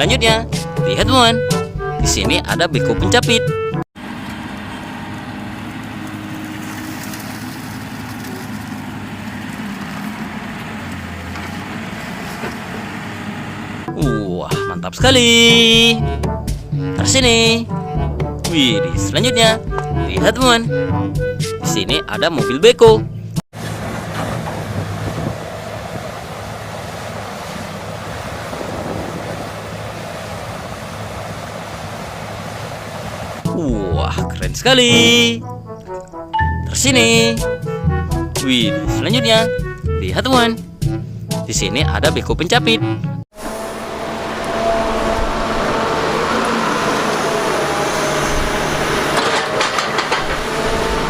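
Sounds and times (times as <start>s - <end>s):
engine idling hum: 4.0s - 20.4s, 23.6s - 41.5s, 43.4s - 51.0s
steady rushing noise: 24.3s - 33.4s
low hum: 43.4s - 51.0s.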